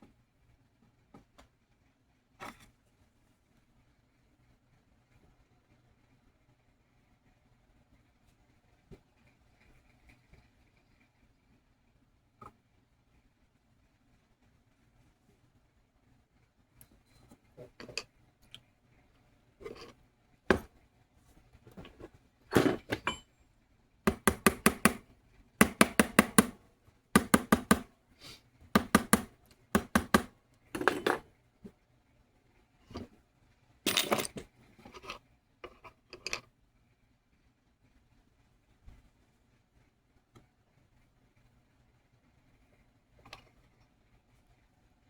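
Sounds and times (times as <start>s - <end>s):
metal tools tapping metal: 21.8s - 23.3s, 30.8s - 31.2s.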